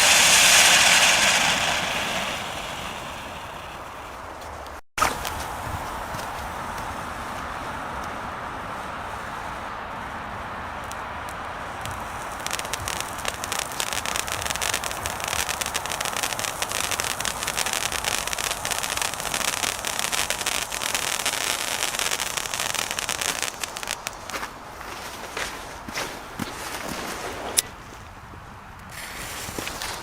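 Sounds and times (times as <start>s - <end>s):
crackling fountain firework: 0.0s - 6.5s, 10.9s - 25.5s.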